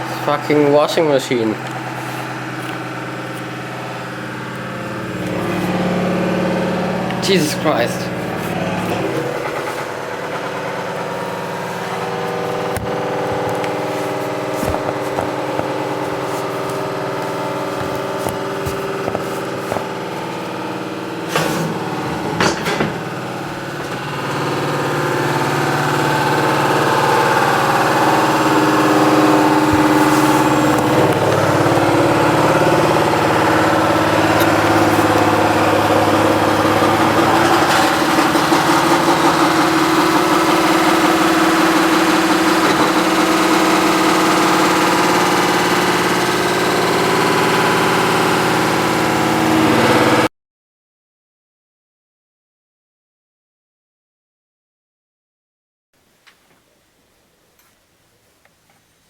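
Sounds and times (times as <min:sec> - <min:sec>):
washing machine spin cycle rumble: 0:00.0 - 0:50.3
washing machine knocking: 0:08.6 - 0:16.2, 0:21.0 - 0:46.8.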